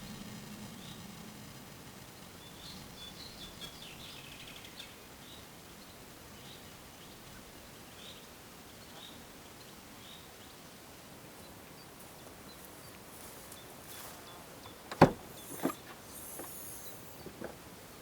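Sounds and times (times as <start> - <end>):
sharp knocks: 14.9 - 16.6.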